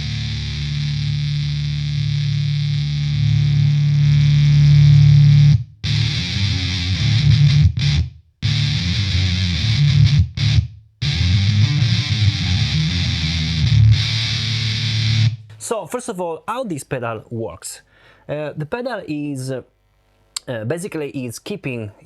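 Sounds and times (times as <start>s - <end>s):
fuzzy electric guitar: 0.0s - 15.6s.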